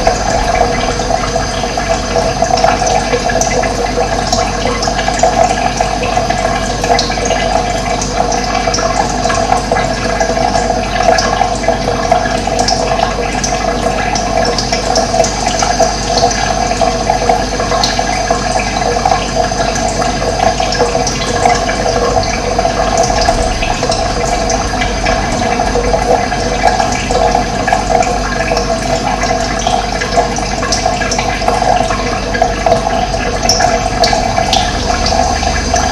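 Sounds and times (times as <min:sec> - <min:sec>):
running water: 0:00.0 - 0:35.9.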